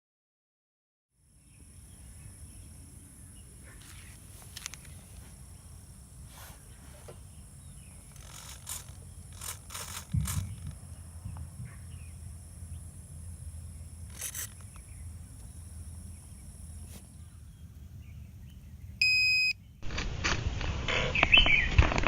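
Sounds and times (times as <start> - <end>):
loud electronic beep: 19.0 - 19.6.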